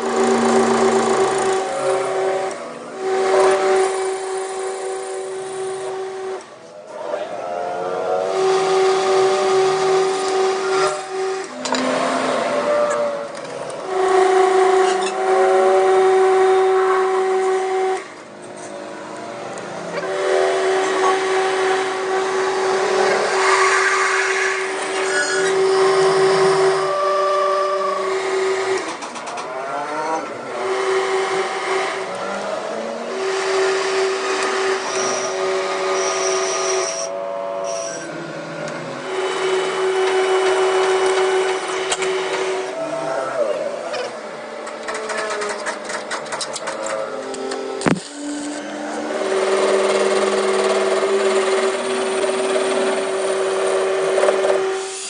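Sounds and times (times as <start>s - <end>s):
power tool motor humming: 0.0s - 6.1s
workshop noise: 8.2s - 55.0s.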